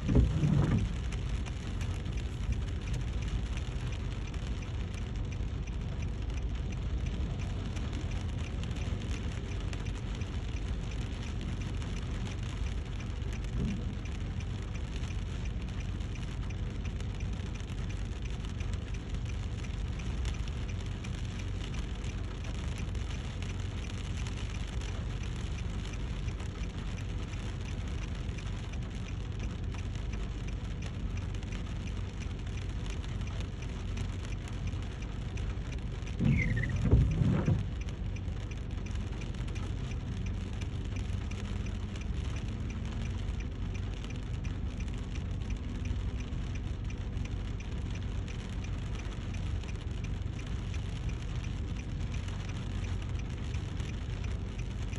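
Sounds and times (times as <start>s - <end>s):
low rumble: 0.0s - 54.9s
rain falling: 0.0s - 54.9s
short falling squeal: 36.2s - 36.8s.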